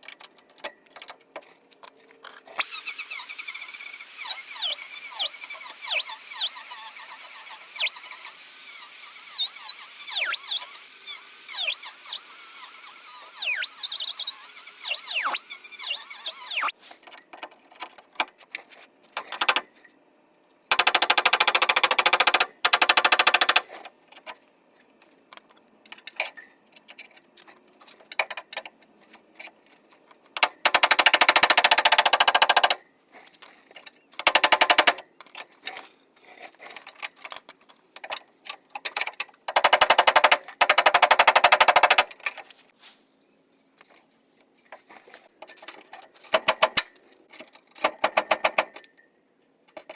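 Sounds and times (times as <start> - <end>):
power tool rattling: 2.6 - 16.7.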